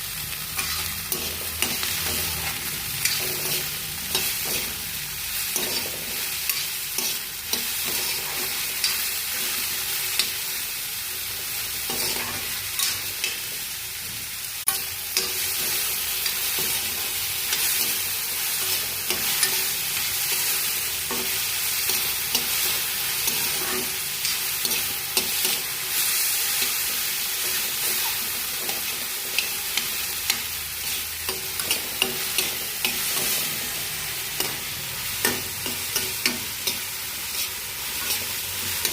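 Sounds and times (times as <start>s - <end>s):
food sizzling in a pan: 0.0s - 38.9s.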